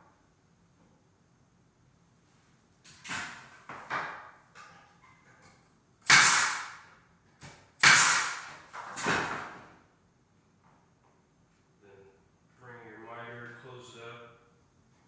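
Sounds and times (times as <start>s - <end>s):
nail gun firing: 6.0s - 6.8s, 7.8s - 9.4s.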